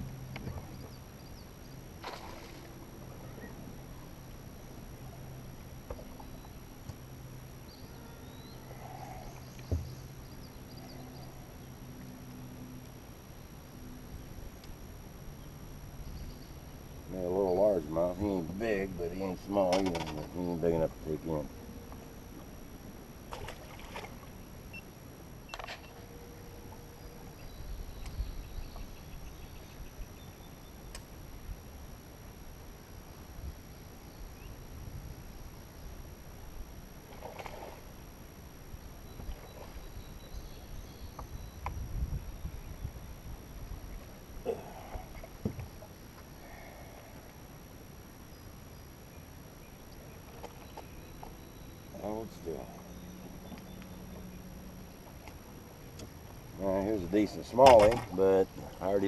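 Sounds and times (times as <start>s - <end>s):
high-pitched hum: 0.0s - 59.0s
faint chirps: 7.6s - 12.8s, 44.4s - 56.0s.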